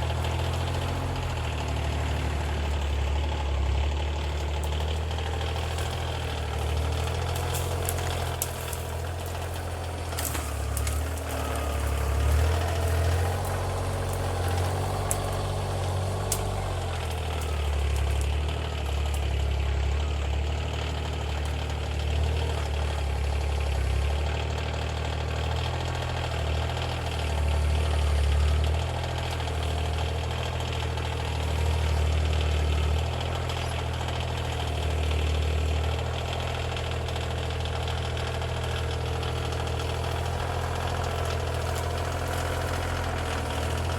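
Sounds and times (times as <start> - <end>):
tractor diesel engine running: 0.0 - 43.9.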